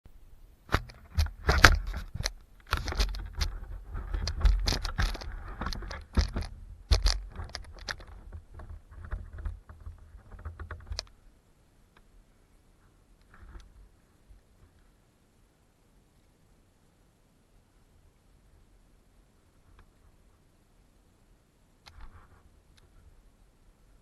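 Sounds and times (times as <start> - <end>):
clatter of knocks and rattles: 0.7 - 11.1.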